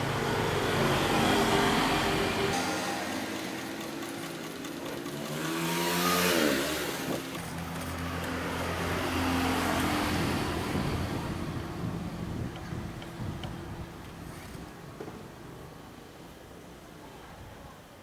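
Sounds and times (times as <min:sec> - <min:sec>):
vehicle engine passing: 0:05.3 - 0:13.3.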